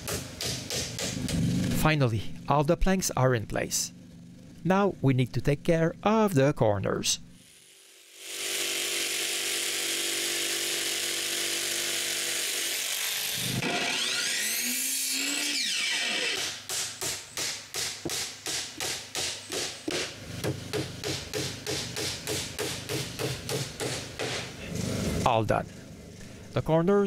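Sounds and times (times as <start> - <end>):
power tool running: 7.4 - 16.7.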